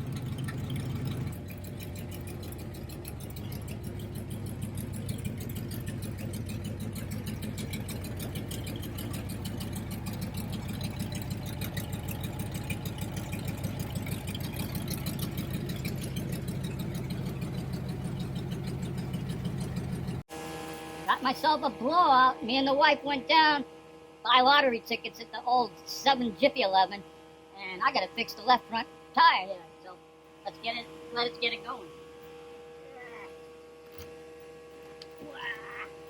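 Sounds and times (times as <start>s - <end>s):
car engine idling: 0.0s - 20.3s.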